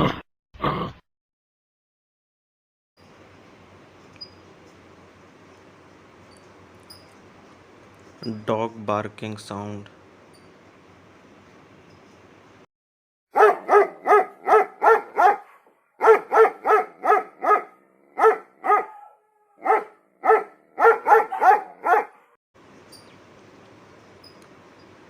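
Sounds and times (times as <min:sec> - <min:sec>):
dog barking: 0:13.4 - 0:22.4.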